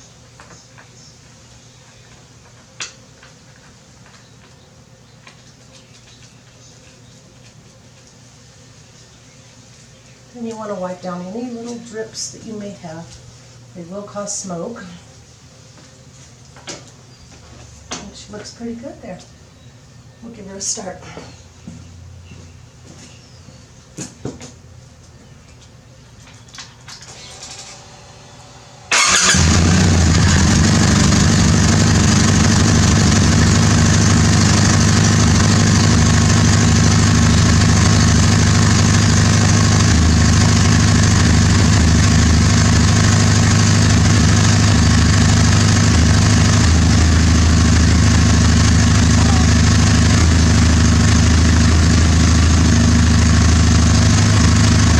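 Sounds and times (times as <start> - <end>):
motorcycle engine starting and idling: 28.9 - 54.9.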